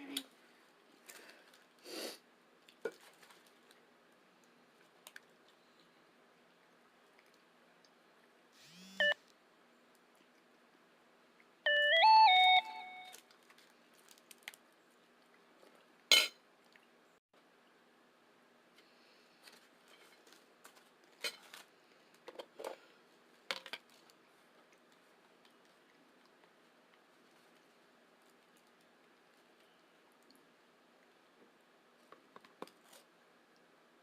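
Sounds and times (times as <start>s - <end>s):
electronic beep: 11.7s - 13.1s.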